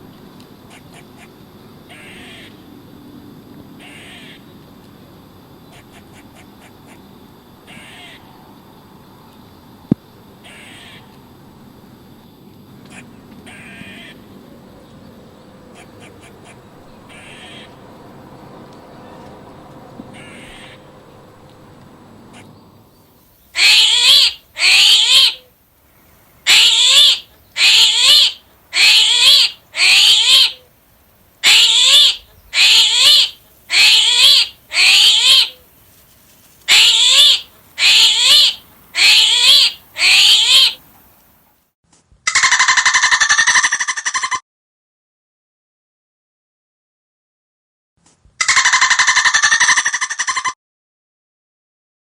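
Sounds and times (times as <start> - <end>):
harsh animal calls: 0.7 - 2.7, 3.8 - 4.5, 5.7 - 8.3, 10.4 - 11.2, 12.7 - 25.5, 26.4 - 30.7, 31.4 - 35.7, 36.7 - 41.0, 42.3 - 44.4, 48.4 - 50.6
faint short calls: 12.8 - 30.8, 31.4 - 41.3.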